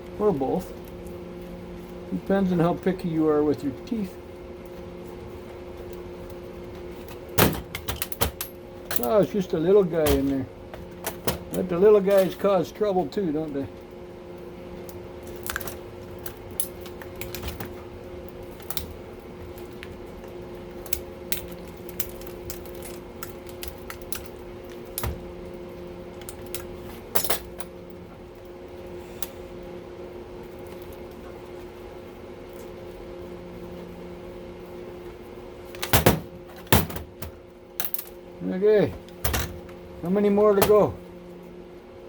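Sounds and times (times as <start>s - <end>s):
steady hum: 0.0s - 42.0s
metal tools clinking on parts: 27.2s - 27.7s.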